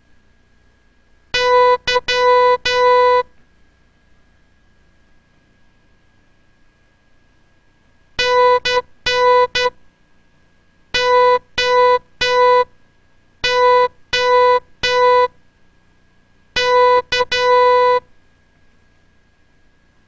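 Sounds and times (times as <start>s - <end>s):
morse code beeps: 1.4s - 3.3s, 8.2s - 9.8s, 11.0s - 12.7s, 13.4s - 15.3s, 16.6s - 18.1s.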